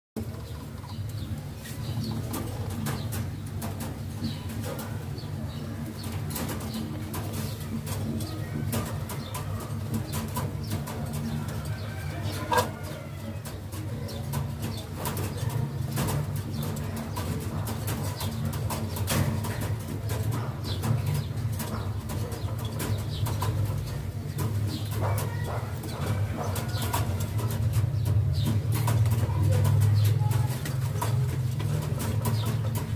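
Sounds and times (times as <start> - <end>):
pigeons cooing: 0.2 - 32.9
wings flapping: 0.6 - 32.9
scattered clicks and taps: 13.3 - 32.9.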